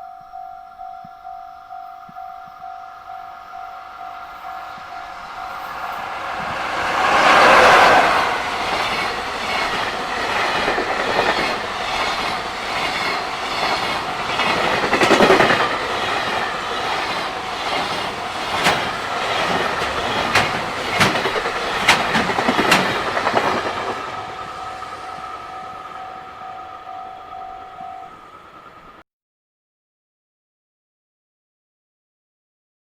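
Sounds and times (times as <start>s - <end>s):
freight train wagons rushing past: 2.6s - 29.0s
wheels clacking over rail joints: 4.8s - 26.4s.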